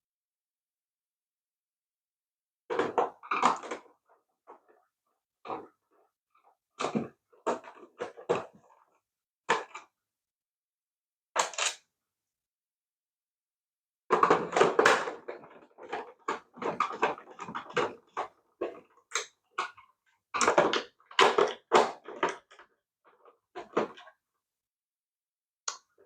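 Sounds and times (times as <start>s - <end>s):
plastic toy clattering and clicking: 2.7s - 3.9s, 11.4s - 11.8s, 14.1s - 19.8s, 20.4s - 24.2s.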